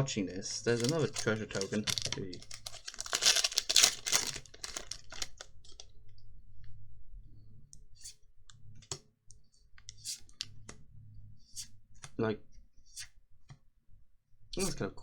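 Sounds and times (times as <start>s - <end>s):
trading cards clicking and snapping: 0.7s - 5.4s.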